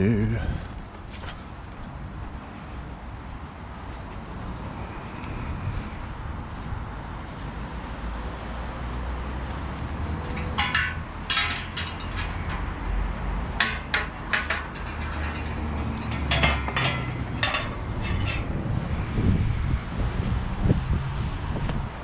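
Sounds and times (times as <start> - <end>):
vehicle engine rumble: 0.0 - 22.0
scrap metal clattering: 10.2 - 13.0, 13.6 - 18.5.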